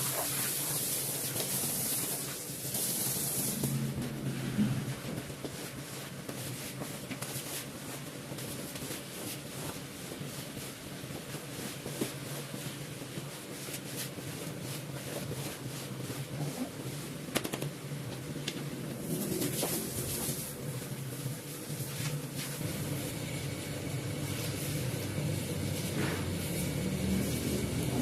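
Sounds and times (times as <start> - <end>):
carpet cleaning machine humming: 0.0 - 6.4, 18.1 - 28.0.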